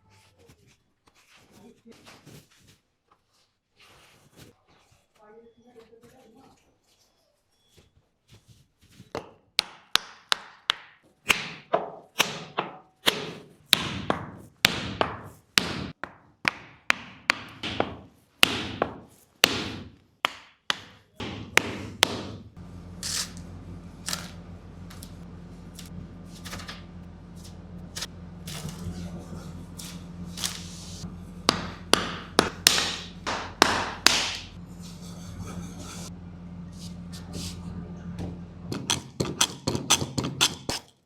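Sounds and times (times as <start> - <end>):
steady machine hum: 21.2 - 40.4.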